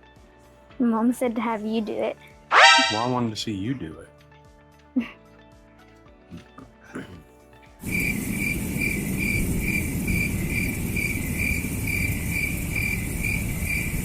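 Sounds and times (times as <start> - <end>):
crickets chirping: 2.6 - 3.2, 7.8 - 14.0
low background hiss: 7.8 - 14.0.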